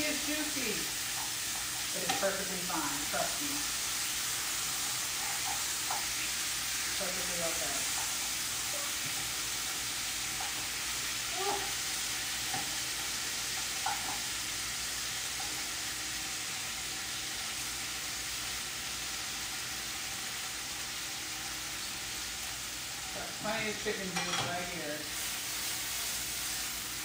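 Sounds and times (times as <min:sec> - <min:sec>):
chicken sizzling in a pan: 0:00.0 - 0:27.0
utensil clinking on pan: 0:24.1 - 0:24.6.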